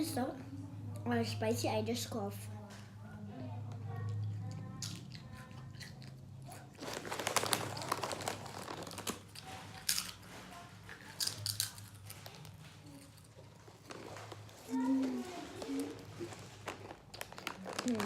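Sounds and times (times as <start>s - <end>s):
crunching and chewing snack: 3.9s - 18.0s.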